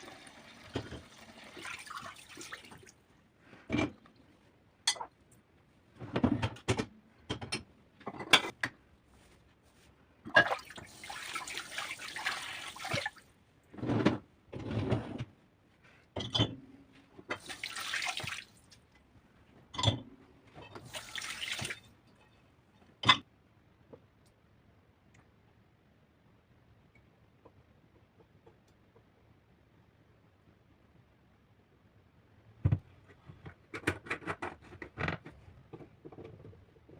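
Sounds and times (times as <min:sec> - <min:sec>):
kitchen tap running: 0:00.0 - 0:02.9, 0:10.3 - 0:13.2, 0:17.4 - 0:18.6, 0:20.7 - 0:21.8.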